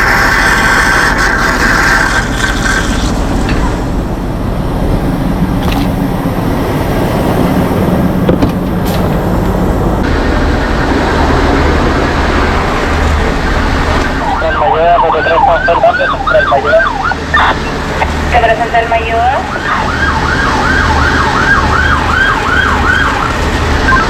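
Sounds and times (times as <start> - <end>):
diesel truck engine running: 0.0 - 24.0
rushing water pump noise: 0.0 - 24.0
high whine: 3.0 - 21.0.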